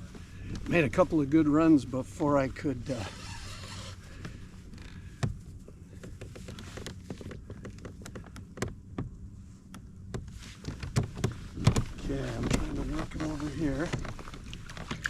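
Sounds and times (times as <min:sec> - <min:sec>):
light taps and clicks: 0:06.0 - 0:15.0
boat motor idling: 0:10.9 - 0:15.0.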